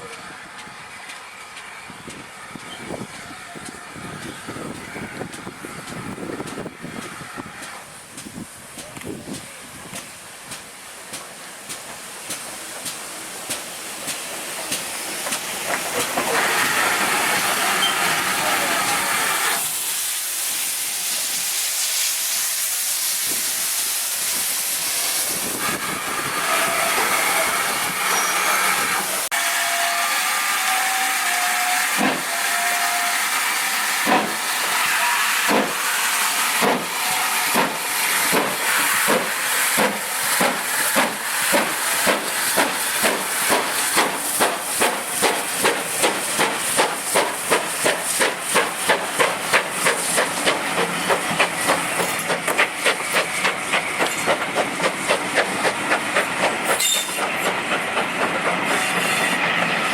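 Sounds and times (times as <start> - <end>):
steam locomotive hissing: 0.0 - 59.9.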